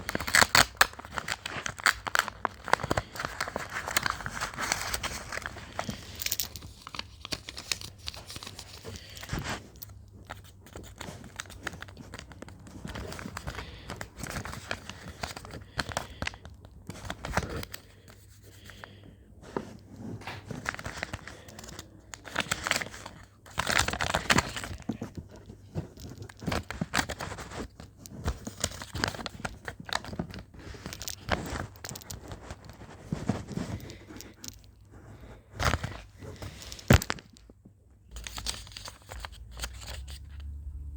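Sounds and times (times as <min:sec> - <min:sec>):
plastic packaging crinkling and tearing: 0:00.0 - 0:17.8, 0:20.6 - 0:34.0.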